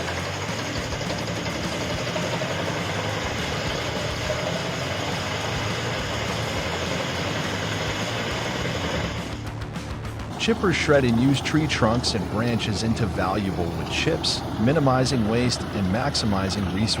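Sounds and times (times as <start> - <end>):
wood chipper running: 0.0 - 9.5, 10.2 - 17.0.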